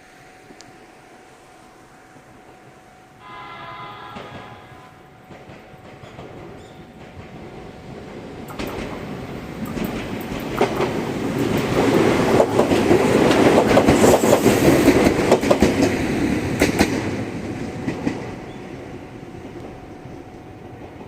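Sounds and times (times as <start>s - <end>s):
electric train passing: 0.0s - 21.0s
wheels clacking over rail joints: 4.1s - 18.6s.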